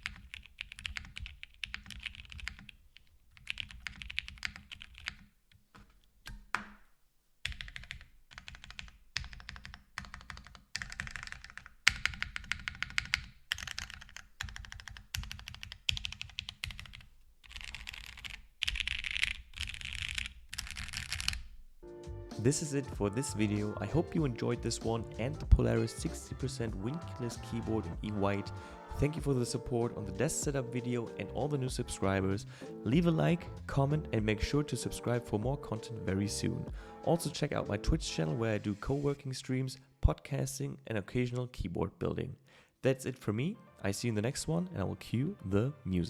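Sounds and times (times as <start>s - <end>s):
mechanical keyboard typing: 0.0s - 6.7s, 7.4s - 21.5s.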